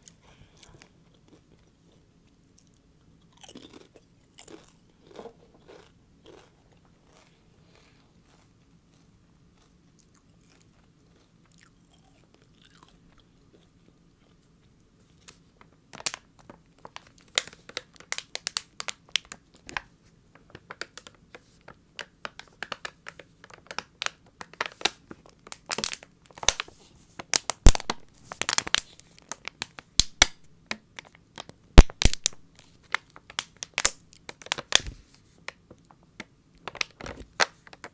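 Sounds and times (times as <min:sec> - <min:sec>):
crisp crunching and crackling: 0:22.2 - 0:34.9.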